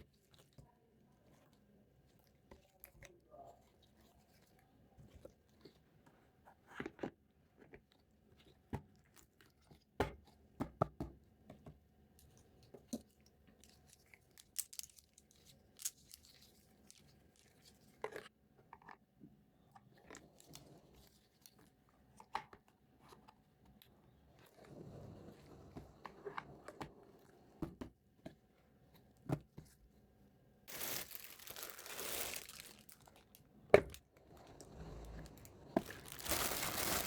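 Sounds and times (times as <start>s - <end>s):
plastic toy pieces clicking: 14.4s - 16.2s
packaging crinkling: 14.4s - 17.7s, 30.7s - 33.4s, 35.8s - 37.0s.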